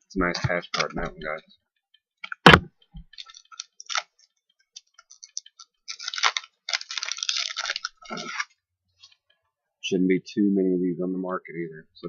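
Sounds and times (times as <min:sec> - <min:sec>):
cards rustling and scraping: 0:03.1 - 0:09.4.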